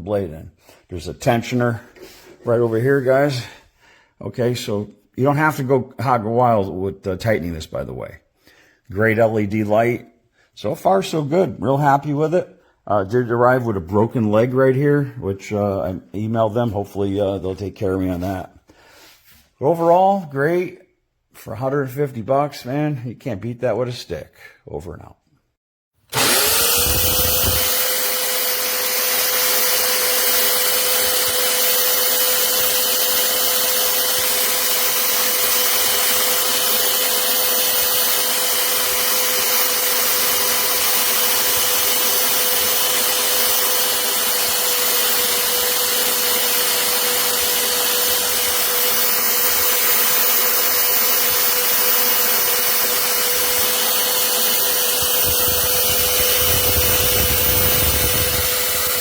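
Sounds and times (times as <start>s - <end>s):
band saw motor running: 26.1s - 59.0s.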